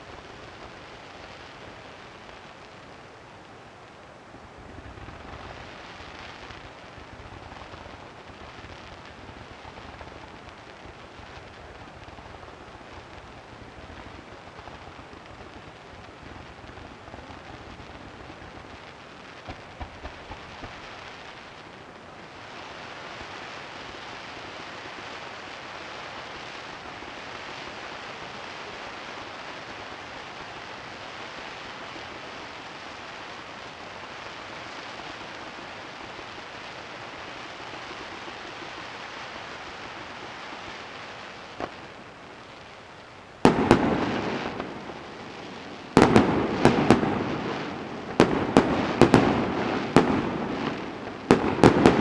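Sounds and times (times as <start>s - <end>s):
fireworks bursting: 4.5s - 52.0s
steady hissing: 4.9s - 27.0s.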